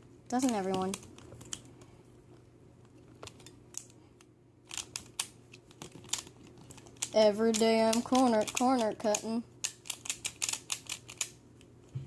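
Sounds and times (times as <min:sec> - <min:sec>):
speed cube clicking: 0:04.7 - 0:11.4.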